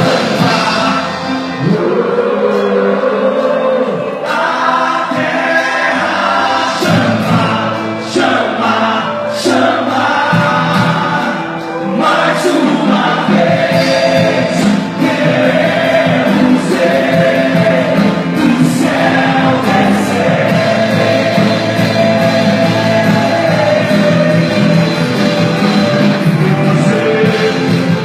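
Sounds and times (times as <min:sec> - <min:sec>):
voices singing over a band: 0:00.0 - 0:28.0.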